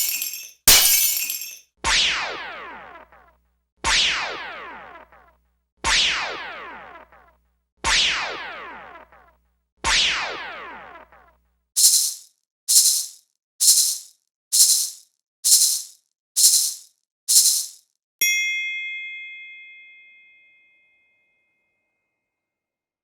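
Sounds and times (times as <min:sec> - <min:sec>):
shaker rattling: 0:00.0 - 0:01.6, 0:11.8 - 0:17.9
bell-like ding: 0:18.2 - 0:22.0.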